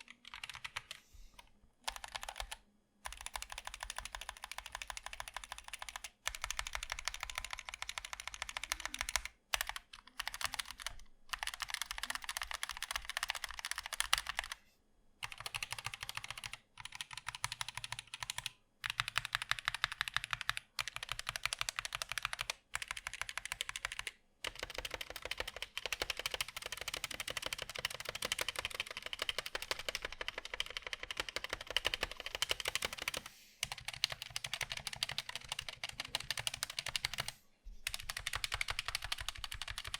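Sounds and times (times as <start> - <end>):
mechanical keyboard typing: 0.0 - 1.0, 1.8 - 14.6, 15.2 - 39.9.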